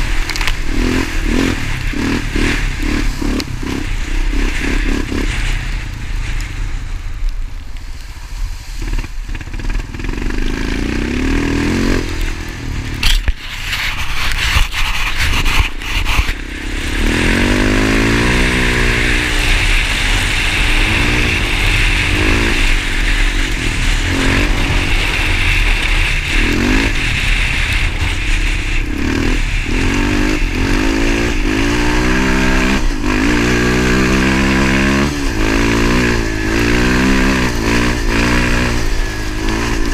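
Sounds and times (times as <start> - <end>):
motorcycle engine revving: 0.0 - 7.3, 8.7 - 39.9
wind and road noise: 0.0 - 39.9.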